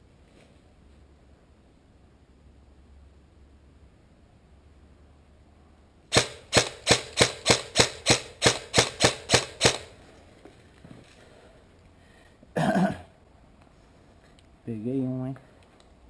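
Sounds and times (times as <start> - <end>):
airsoft gun shots: 6.1 - 9.9.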